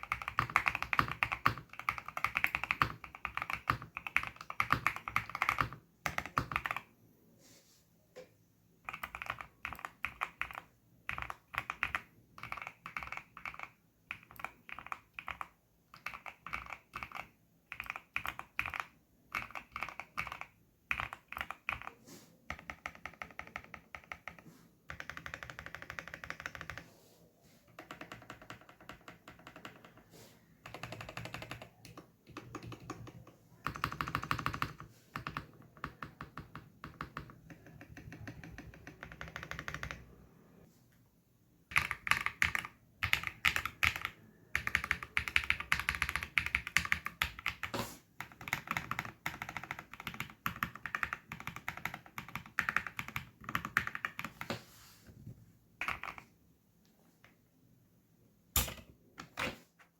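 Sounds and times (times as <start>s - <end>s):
fast typing on mechanical keyboard: 0.0s - 6.9s, 8.8s - 26.8s, 27.7s - 40.2s, 41.7s - 54.5s, 55.8s - 56.3s.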